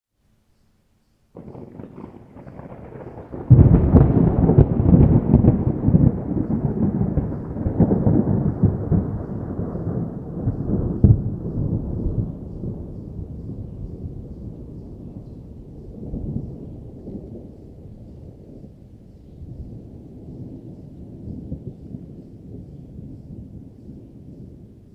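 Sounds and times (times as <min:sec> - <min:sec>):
thunder rumbling: 0:01.4 - 0:24.9.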